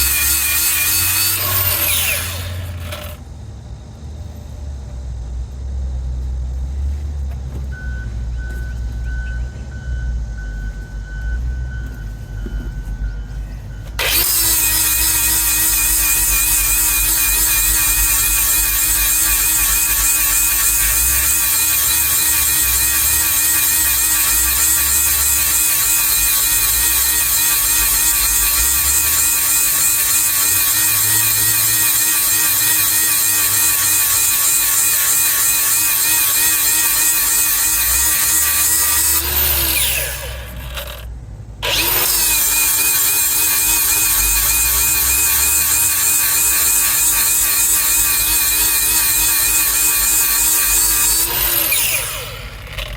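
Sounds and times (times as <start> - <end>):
power grinder whining on metal: 0.0 - 3.2, 13.8 - 52.9.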